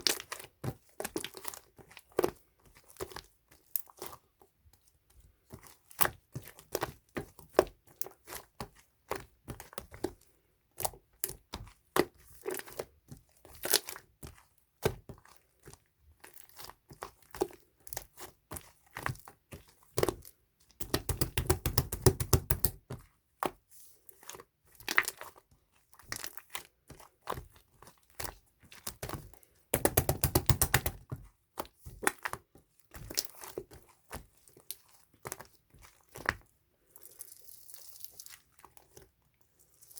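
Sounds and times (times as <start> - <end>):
rapid popping clicks: 29.8 - 31.0.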